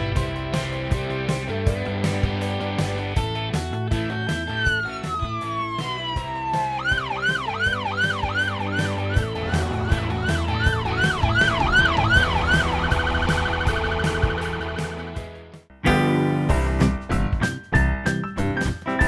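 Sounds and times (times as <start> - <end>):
background music with steady beat: 0.0 - 19.0
electronic police siren: 4.2 - 15.2.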